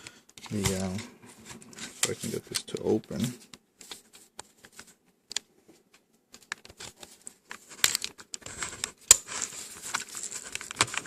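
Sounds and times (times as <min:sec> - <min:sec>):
plastic scraping: 0:00.4 - 0:03.5.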